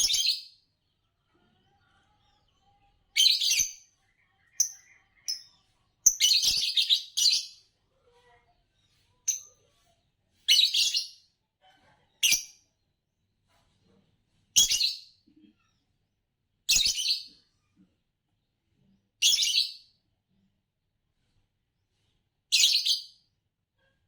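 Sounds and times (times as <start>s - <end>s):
lovebirds chirping: 0.0s - 0.5s, 1.3s - 7.7s.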